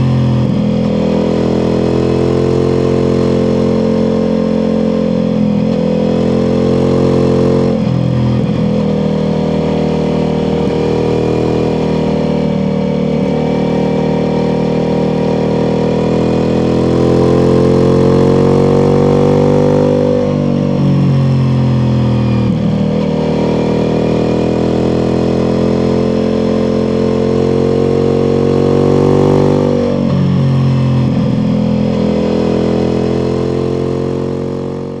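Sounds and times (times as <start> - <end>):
motorcycle engine under load: 0.0 - 35.0.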